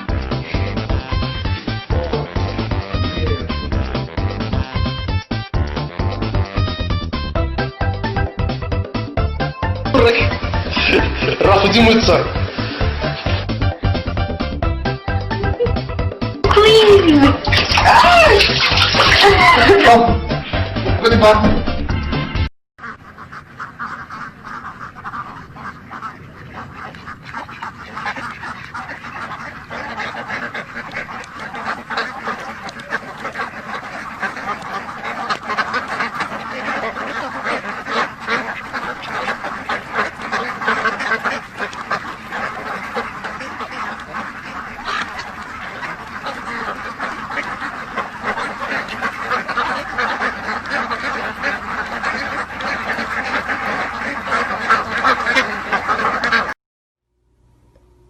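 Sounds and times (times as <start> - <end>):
flock of birds chattering: 22.8 - 56.5.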